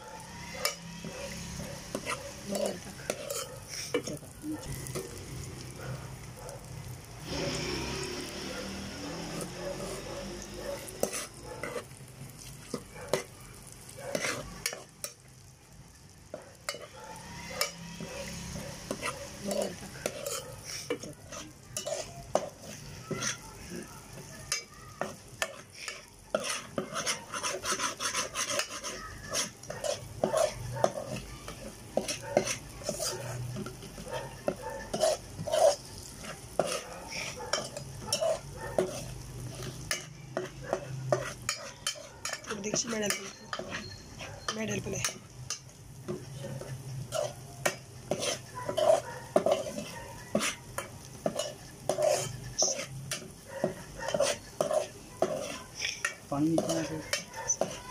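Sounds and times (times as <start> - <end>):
paste sizzling in hot oil: 0.0 - 57.9
spoon scraping a pot: 0.2 - 5.4, 7.2 - 15.5, 16.3 - 57.9.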